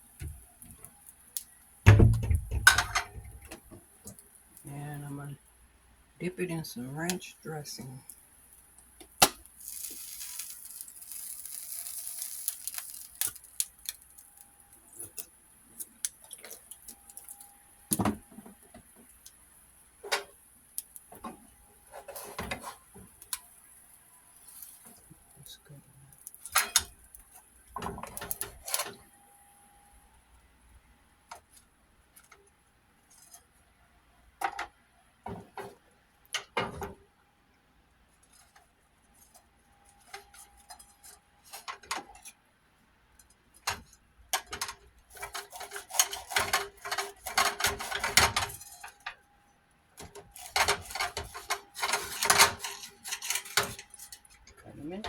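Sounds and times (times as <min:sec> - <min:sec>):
utensils clicking on dishes: 0:50.4 - 0:54.2.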